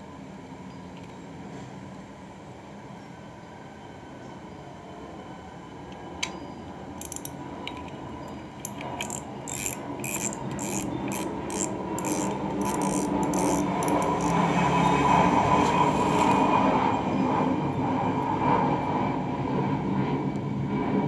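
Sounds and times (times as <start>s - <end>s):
reel sharp clicks: 7.0s - 17.0s
fishing reel gear whirring: 7.0s - 18.4s.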